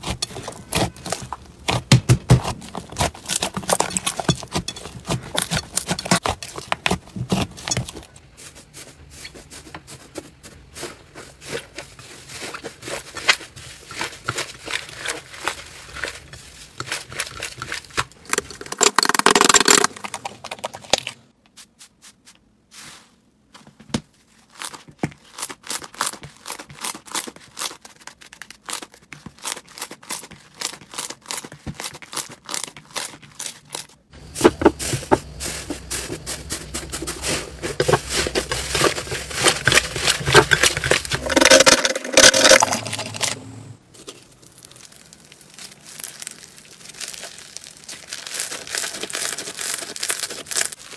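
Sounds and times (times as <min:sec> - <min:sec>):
slime squishing: 0:00.0 - 0:21.2, 0:24.3 - 0:43.4, 0:44.0 - 0:50.9
slime crackling and popping: 0:44.0 - 0:50.9.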